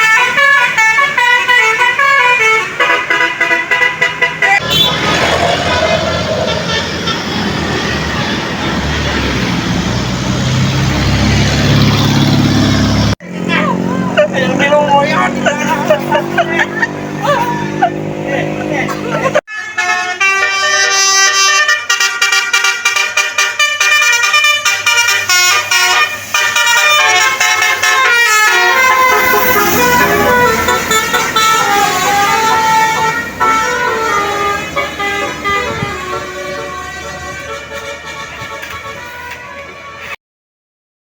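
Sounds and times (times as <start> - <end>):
bus musical air horn melody: 0.0 - 9.5, 18.9 - 40.2.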